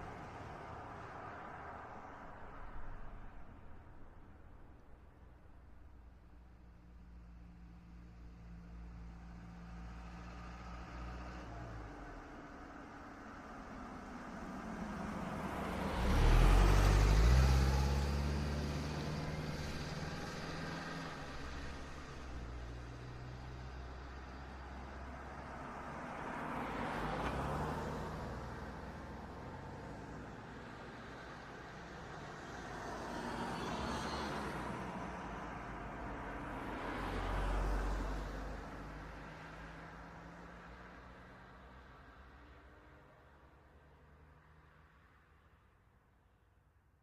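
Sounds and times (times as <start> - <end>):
car driving past: 13.6 - 41.6.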